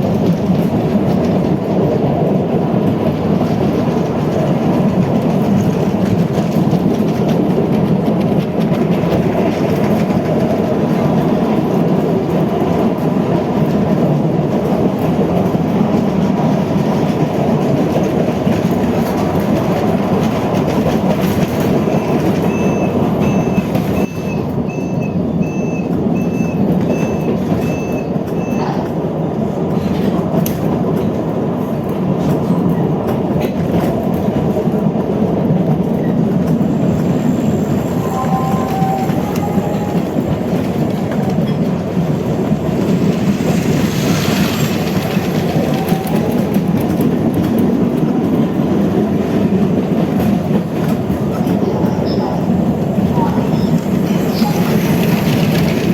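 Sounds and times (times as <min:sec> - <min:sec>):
train rumbling: 0:00.0 - 0:55.9
wheels clattering on rails: 0:00.0 - 0:55.9
short high beeps: 0:21.9 - 0:28.7.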